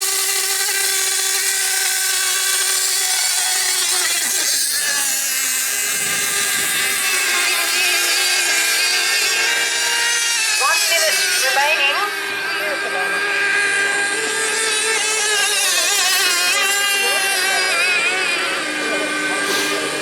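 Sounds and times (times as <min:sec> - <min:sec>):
racing outboard engines whining: 0:00.0 - 0:20.0.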